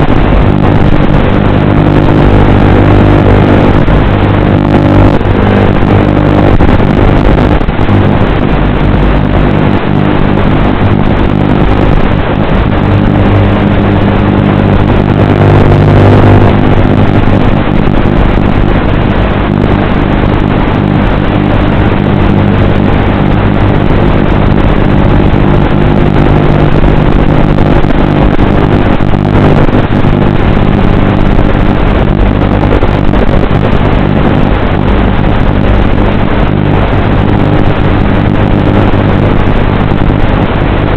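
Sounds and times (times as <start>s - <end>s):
drone propellers buzzing: 0.0s - 40.9s.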